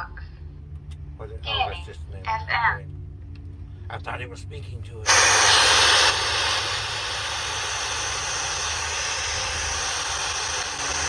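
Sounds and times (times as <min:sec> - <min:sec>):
radio static hiss: 0:05.1 - 0:11.0.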